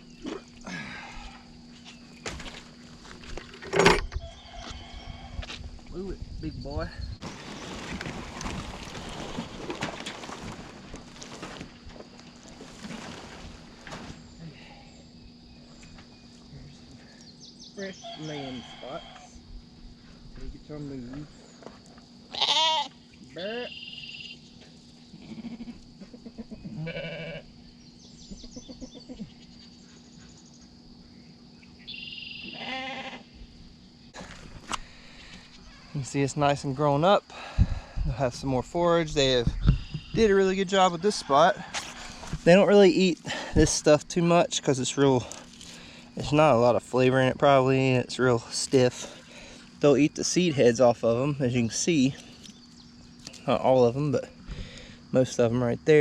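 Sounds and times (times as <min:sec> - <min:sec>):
wind noise on microphone: 0:03.8 - 0:07.2, 0:37.5 - 0:38.4, 0:39.2 - 0:40.3
rustling and crackling: 0:07.2 - 0:14.4
sheep bleating: 0:22.3 - 0:24.0, 0:25.1 - 0:25.8, 0:26.6 - 0:27.4, 0:32.4 - 0:33.3.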